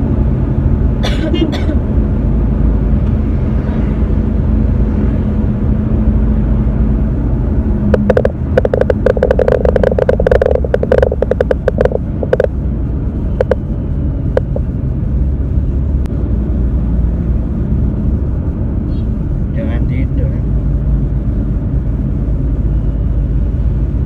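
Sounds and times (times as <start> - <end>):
vehicle rumble: 0.0 - 24.0
rapid clicks over a buzz: 7.9 - 12.5.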